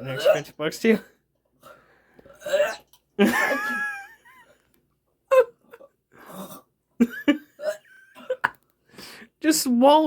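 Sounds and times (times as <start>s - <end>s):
person gagging: 2.4s - 2.9s.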